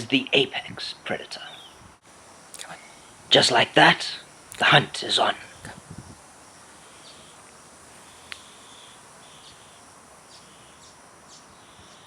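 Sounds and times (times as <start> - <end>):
faint bird chirps: 1.4 - 1.9, 2.5 - 3.2, 5.2 - 7.4, 8.0 - 12.0.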